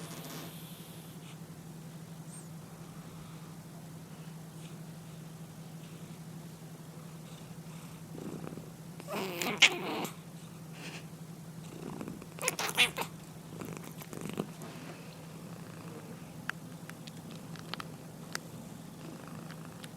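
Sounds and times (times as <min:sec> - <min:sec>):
faint breaths: 0:02.6 - 0:06.3
cat snoring: 0:07.4 - 0:10.1, 0:11.6 - 0:12.2, 0:13.5 - 0:14.5, 0:19.0 - 0:19.8.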